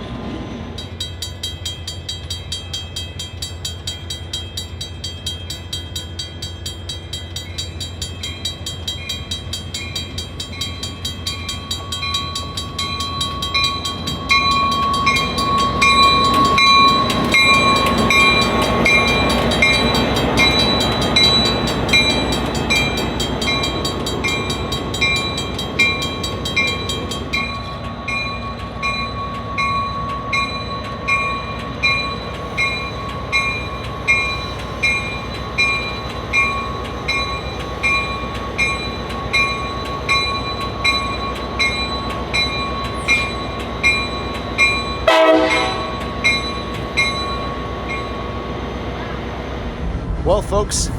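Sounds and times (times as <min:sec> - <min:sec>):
train rumble and wheel noise: 0:00.0 - 0:50.9
crossing bell ringing: 0:00.8 - 0:48.5.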